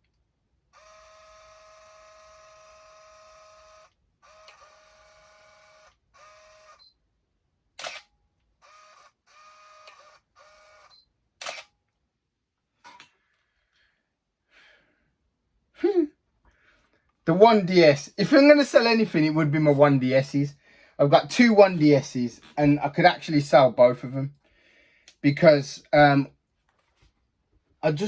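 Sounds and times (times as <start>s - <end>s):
camera motor whirring: 0.7s - 7.0s, 7.8s - 11.7s
camera shutter clicks: 4.3s - 6.8s, 7.8s - 11.7s.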